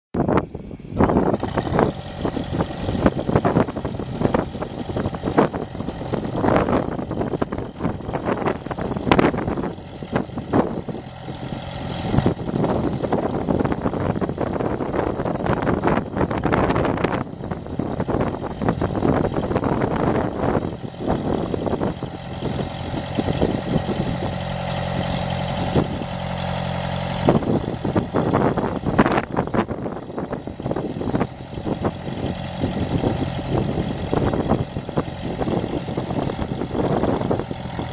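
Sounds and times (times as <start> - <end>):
diesel engine idling with surges: 0.2 - 37.9.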